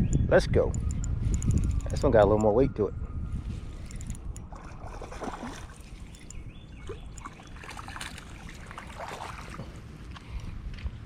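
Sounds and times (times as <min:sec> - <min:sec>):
wind rumbling on microphone: 0:00.0 - 0:11.0
small clicks: 0:00.1 - 0:02.5, 0:06.1 - 0:06.4
water sounds: 0:03.7 - 0:10.0.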